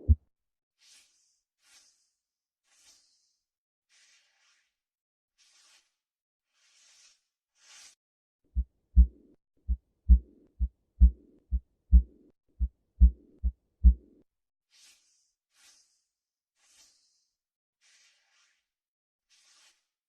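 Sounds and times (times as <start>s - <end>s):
lub-dub heartbeat: 0.0s - 0.2s, 8.6s - 14.2s
soft heart murmur: 8.6s - 14.2s.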